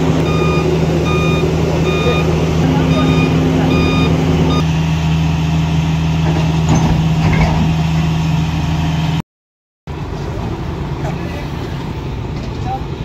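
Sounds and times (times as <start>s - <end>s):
heavy diesel engine droning: 0.0s - 9.2s.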